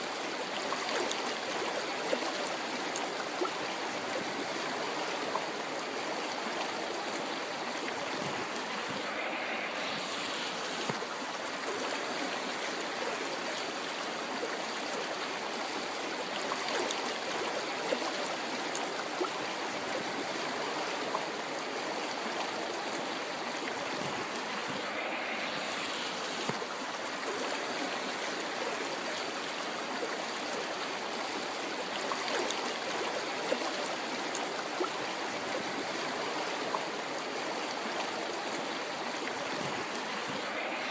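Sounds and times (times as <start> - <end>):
river water rushing: 0.0 - 40.9
water splashing and trickling: 0.0 - 40.9.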